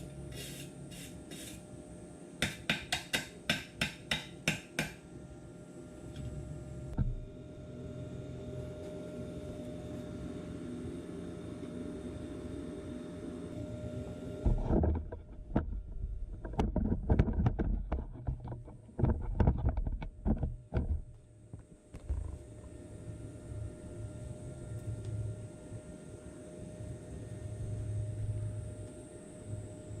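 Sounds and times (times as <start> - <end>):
steady hum with faint whine: 0.0 - 30.0
irregular knocks and clatters: 14.5 - 22.4.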